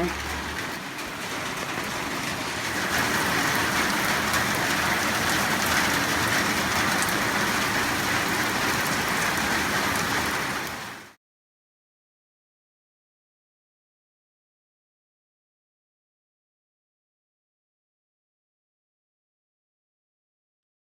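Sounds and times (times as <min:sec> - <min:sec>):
heavy rain pouring: 0:00.0 - 0:11.2.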